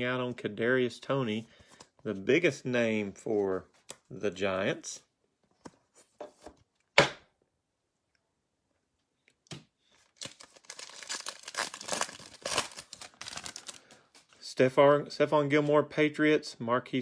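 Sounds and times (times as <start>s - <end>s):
foil wrapper tearing and crinkling: 10.1s - 14.0s.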